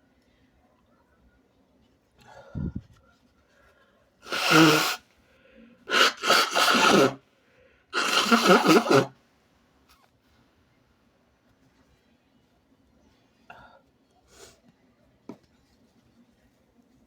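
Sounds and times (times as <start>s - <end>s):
person sneezing: 4.3s - 5.0s, 5.9s - 7.2s, 8.0s - 9.1s.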